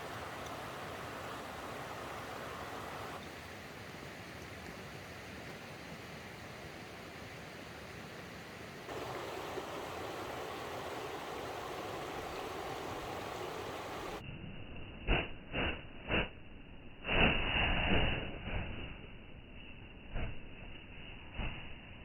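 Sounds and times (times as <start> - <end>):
mountain stream rushing: 0.0 - 14.2.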